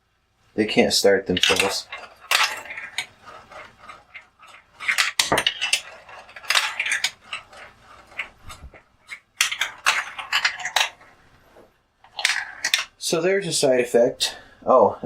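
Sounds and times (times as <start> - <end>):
glass marbles rattling down plastic run: 1.1 - 11.2, 12.1 - 13.0.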